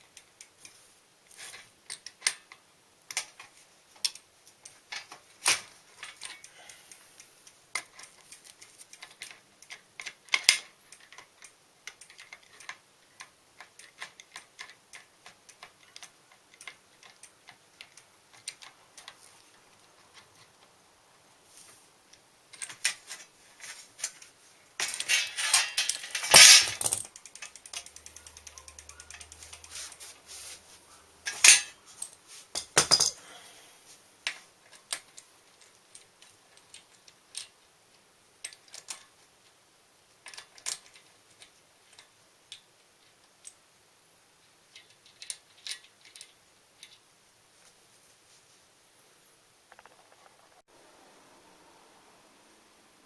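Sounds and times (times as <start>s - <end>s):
metal tool clicks and clatter: 24.8s - 29.7s, 31.2s - 33.2s.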